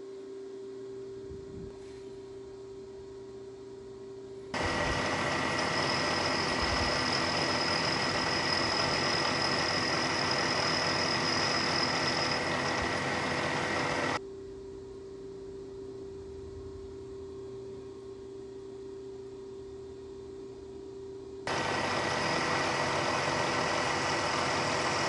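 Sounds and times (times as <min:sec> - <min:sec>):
milling machine cutting metal: 0:04.6 - 0:14.2, 0:21.5 - 0:25.0.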